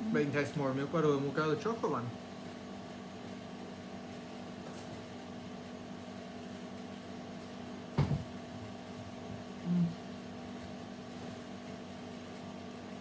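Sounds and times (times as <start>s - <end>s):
appliance humming: 0.0s - 13.0s
brief knock: 8.0s - 8.3s.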